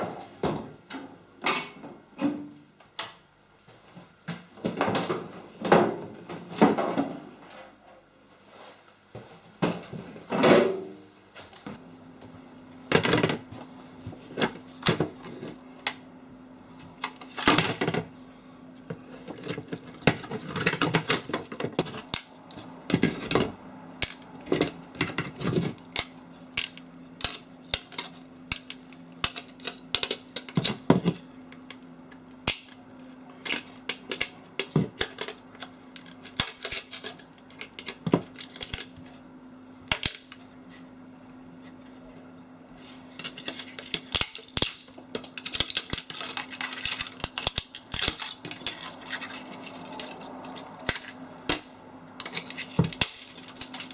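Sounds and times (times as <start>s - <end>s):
faint steady hum: 0.0s - 53.9s
metal parts clinking: 43.2s - 53.9s.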